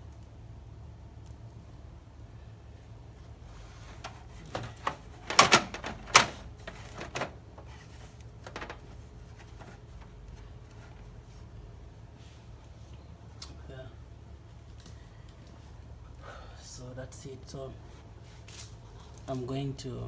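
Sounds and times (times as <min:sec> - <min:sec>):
computer hardware knocks and clicks: 0:04.0 - 0:07.3.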